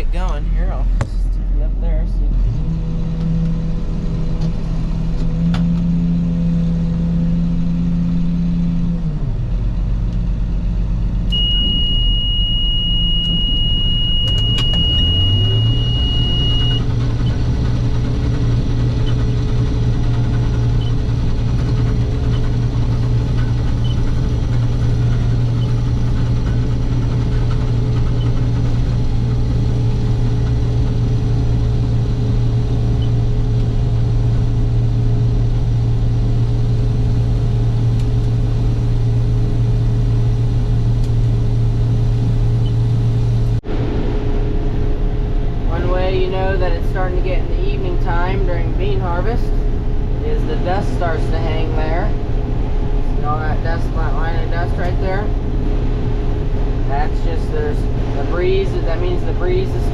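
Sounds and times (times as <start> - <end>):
combine engine drone: 0.0 - 59.9
steady high beep: 11.3 - 16.8.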